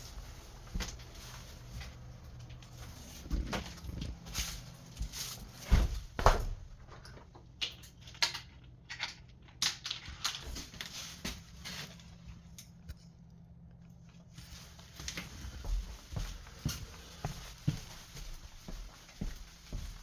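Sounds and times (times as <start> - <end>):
low steady hum: 0.0 - 20.0
footsteps on hard floor: 15.0 - 20.0.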